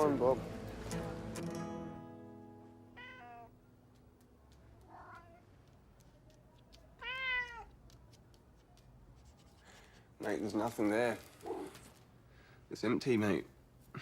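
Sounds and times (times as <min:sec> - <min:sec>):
cat meowing: 0:03.0 - 0:03.6, 0:04.8 - 0:05.4, 0:07.0 - 0:07.8.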